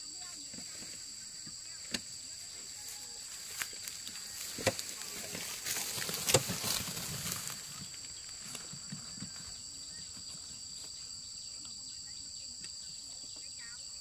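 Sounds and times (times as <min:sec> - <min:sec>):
insects trilling: 0:00.0 - 0:14.0.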